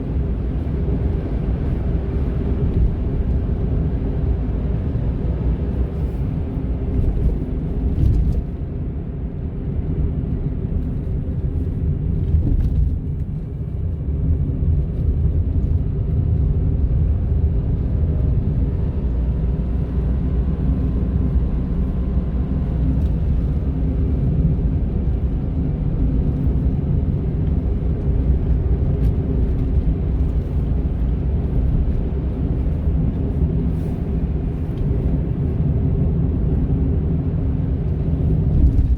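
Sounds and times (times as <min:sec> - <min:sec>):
car engine and road rumble: 0:00.0 - 0:38.9
constant motor-like hum: 0:00.0 - 0:38.9.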